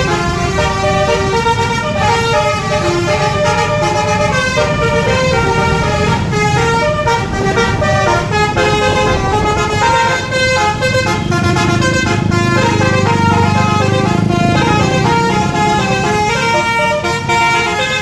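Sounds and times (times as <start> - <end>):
multi-tone bus air horn melody: 0.0 - 18.0
low rumble: 4.3 - 12.1.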